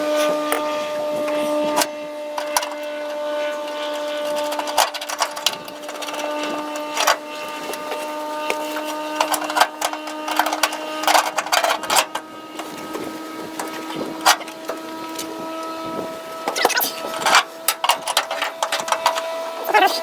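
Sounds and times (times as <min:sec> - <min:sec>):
steady hum: 0:00.0 - 0:20.0
hand tools clicking and clanking: 0:00.1 - 0:20.0.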